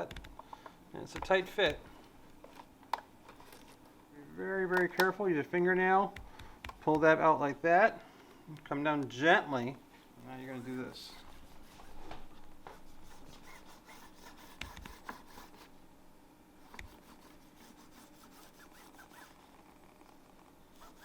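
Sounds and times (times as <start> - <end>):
tool scraping adhesive tape: 10.6 - 15.7, 16.6 - 19.5, 20.7 - 21.0.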